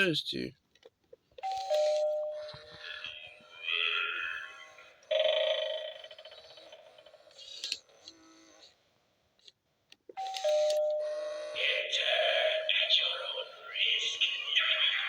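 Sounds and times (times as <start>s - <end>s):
electronic ringing tone: 1.4s - 3.8s, 4.4s - 6.8s, 10.2s - 11.8s.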